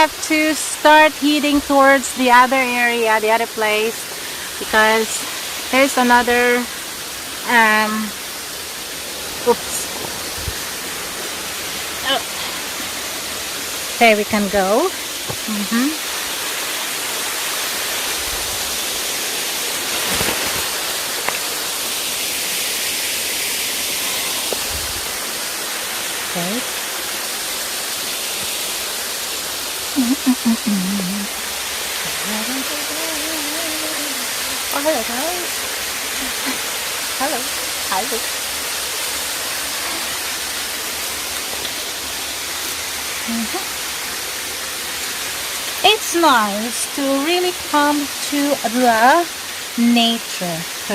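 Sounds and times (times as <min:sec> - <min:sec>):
waterfall roaring: 0:00.0 - 0:50.9
brief voice: 0:30.0 - 0:31.3.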